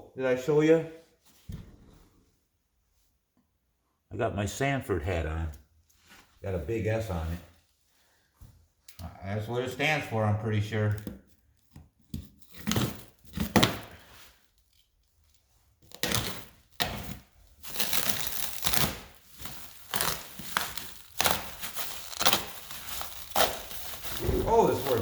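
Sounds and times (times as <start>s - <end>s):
plastic wrap ripping and crumpling: 15.9s - 25.0s.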